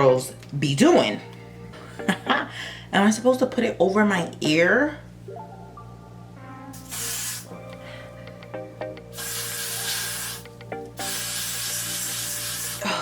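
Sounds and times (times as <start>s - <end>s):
background music: 0.6s - 3.0s, 4.4s - 13.0s
aerosol hair spray hissing: 6.8s - 7.6s, 9.1s - 12.8s.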